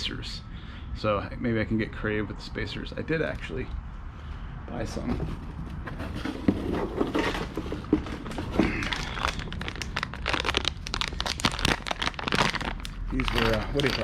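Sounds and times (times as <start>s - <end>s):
plastic packaging crinkling: 6.8s - 14.0s.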